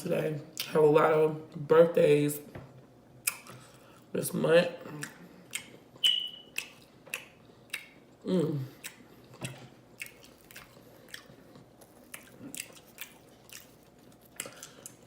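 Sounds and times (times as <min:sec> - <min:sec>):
chewing with wet mouth smacks: 0:04.9 - 0:15.0.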